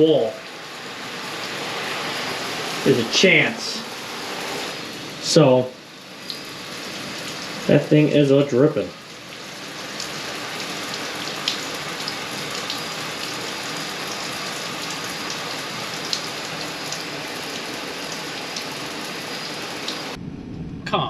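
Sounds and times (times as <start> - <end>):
shower water spraying onto tub: 0.0 - 20.2.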